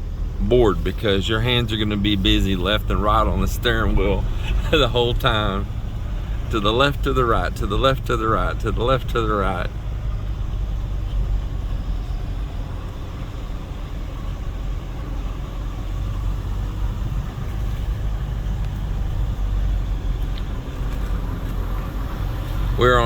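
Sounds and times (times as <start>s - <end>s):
road noise: 0.0s - 23.0s
truck engine rumbling: 0.0s - 23.0s.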